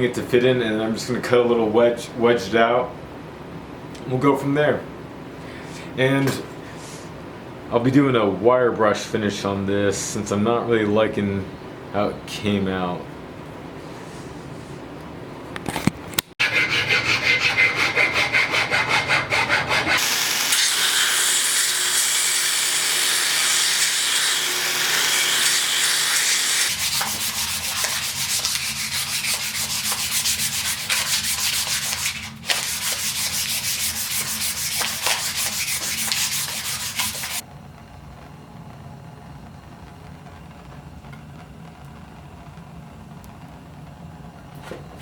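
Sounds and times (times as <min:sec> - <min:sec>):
wire brush scratching steel: 0:16.4 - 0:37.4.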